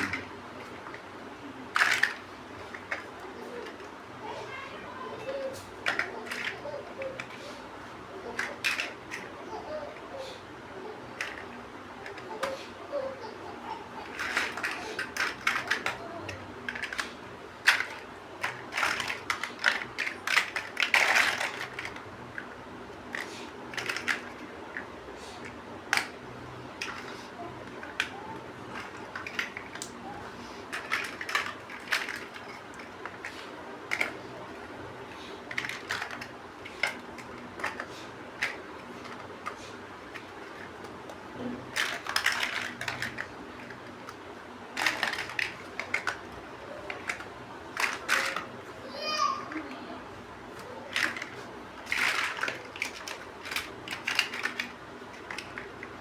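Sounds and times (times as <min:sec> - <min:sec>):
plastic bricks clicking together: 0:01.7 - 0:03.9, 0:05.8 - 0:07.4, 0:08.3 - 0:09.8, 0:14.0 - 0:26.2, 0:26.8 - 0:48.6, 0:50.6 - 0:56.0.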